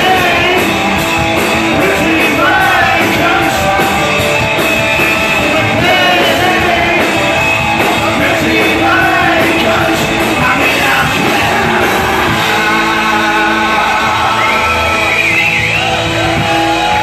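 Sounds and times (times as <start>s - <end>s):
live punk rock band: 0.0s - 17.0s
person shouting singing: 5.2s - 15.2s.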